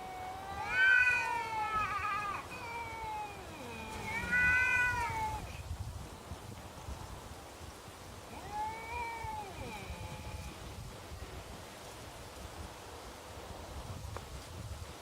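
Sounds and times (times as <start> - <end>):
cat moaning: 0.0 - 5.6, 8.3 - 10.6
cats yowling: 0.0 - 5.6, 8.3 - 10.6.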